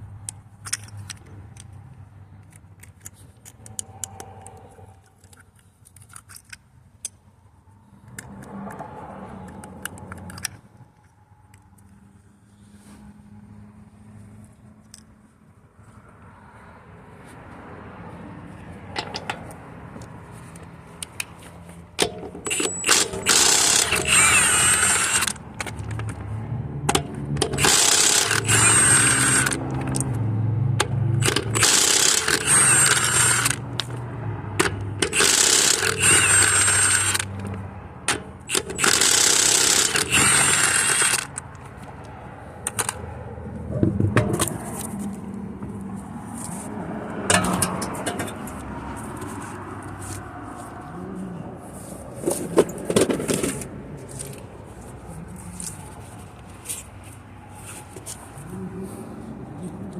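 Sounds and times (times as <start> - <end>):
impact wrench spinning: 22.0 - 26.2, 27.4 - 30.0, 31.2 - 34.0, 34.6 - 37.5, 38.1 - 41.5.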